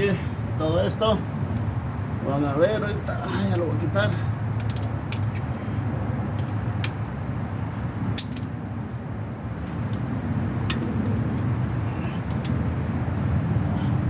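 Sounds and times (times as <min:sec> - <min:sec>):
tools clinking against metal: 0:04.1 - 0:05.5, 0:06.4 - 0:07.0, 0:08.2 - 0:08.6.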